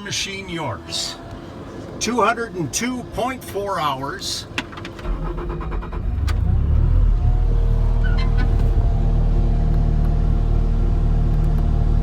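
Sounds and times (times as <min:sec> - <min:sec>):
diesel engine starting up: 0:04.2 - 0:12.0.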